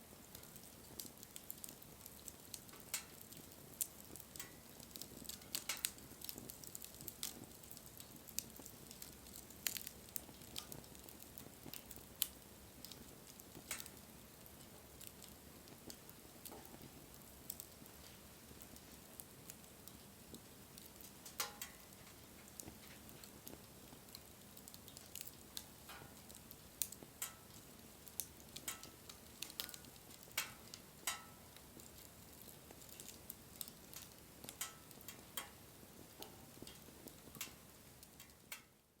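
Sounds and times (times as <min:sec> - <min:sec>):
bonfire crackling and popping: 0:00.0 - 0:39.0.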